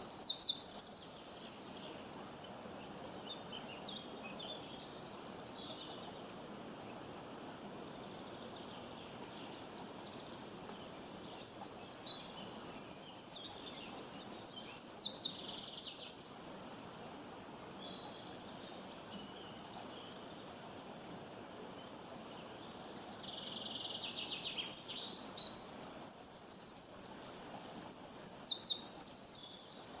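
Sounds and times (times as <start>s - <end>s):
songbird trilling: 0.0s - 1.8s, 10.6s - 16.5s, 23.9s - 30.0s
faint background noise: 0.0s - 30.0s.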